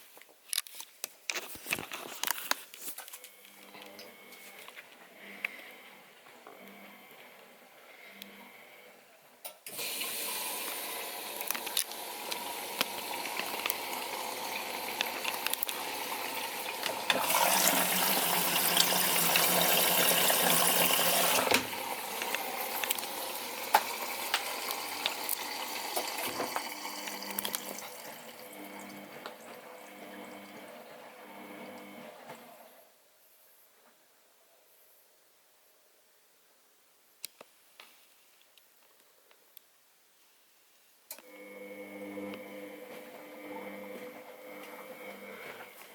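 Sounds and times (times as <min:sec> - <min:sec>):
washing machine filling with water: 0:09.7 - 0:32.1, 0:41.3 - 0:45.8.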